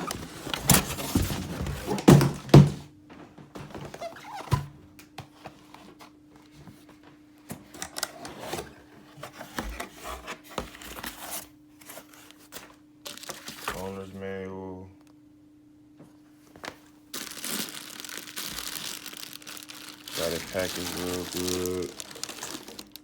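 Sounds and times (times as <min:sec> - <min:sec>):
packaging knocks and clicks: 0:17.2 - 0:23.0.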